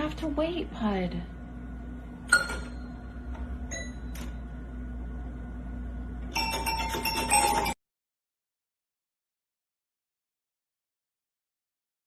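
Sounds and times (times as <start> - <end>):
jangle of ringing tones: 6.3 - 7.8.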